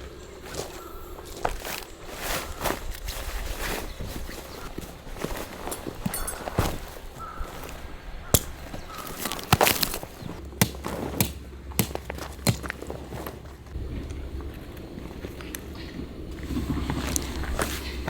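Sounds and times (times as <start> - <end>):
faint low rumble: 12.7 - 18.0.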